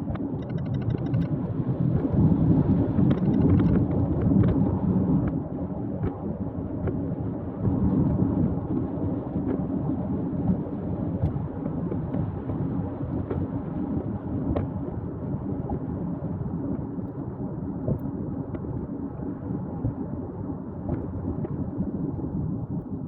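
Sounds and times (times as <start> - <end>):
faint ticks: 0.1 - 1.3.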